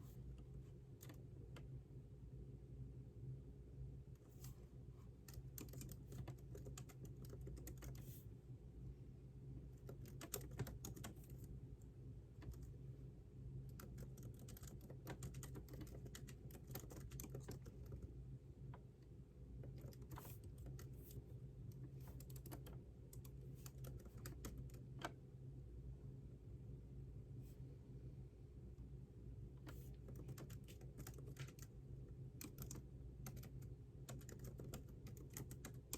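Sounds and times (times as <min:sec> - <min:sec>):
steady low hum: 0:00.0 - 0:35.9
typing on keyboard: 0:01.0 - 0:01.7, 0:05.2 - 0:08.1, 0:09.8 - 0:11.5, 0:13.7 - 0:18.1, 0:19.6 - 0:21.0, 0:21.7 - 0:25.2, 0:29.7 - 0:31.7, 0:32.3 - 0:35.9.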